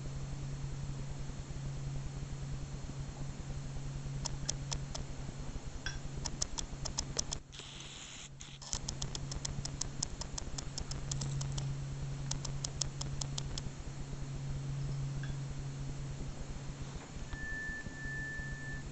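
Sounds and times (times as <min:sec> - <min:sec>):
low electrical hum: 0:00.0 - 0:18.9
sharp high-pitched clicks: 0:04.2 - 0:05.1, 0:05.9 - 0:13.7.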